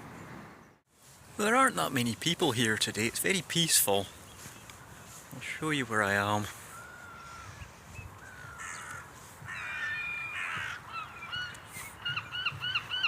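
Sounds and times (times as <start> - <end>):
bird cawing: 6.5 - 13.0
shrill bird calls: 6.6 - 13.0.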